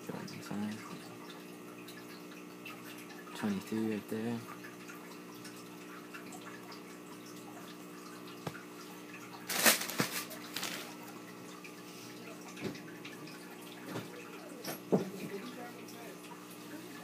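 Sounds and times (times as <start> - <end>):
low electrical hum: 0.0 - 17.0
hands rustling slides: 9.5 - 10.9.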